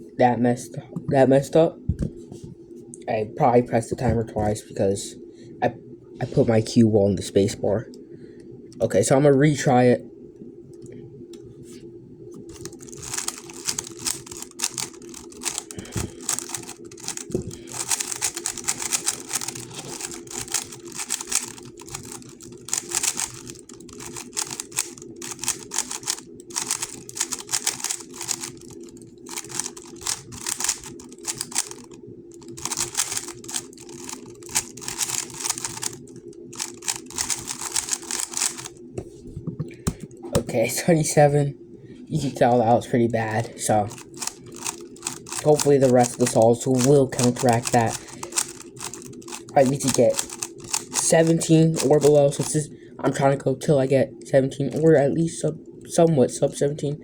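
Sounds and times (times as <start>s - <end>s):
steady low hum: 0.0s - 57.0s
puzzle cube plastic clicking: 12.5s - 38.8s, 43.9s - 52.6s.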